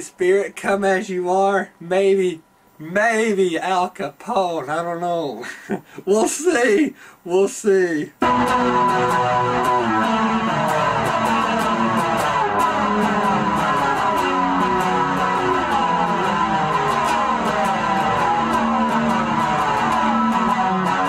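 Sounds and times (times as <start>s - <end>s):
guitar picked and strummed: 8.2s - 21.0s.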